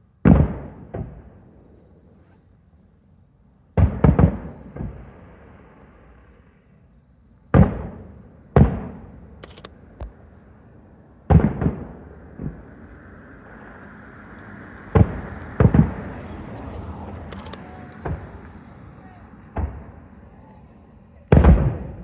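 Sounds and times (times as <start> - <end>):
firework shells booming: 19.5 - 20.0.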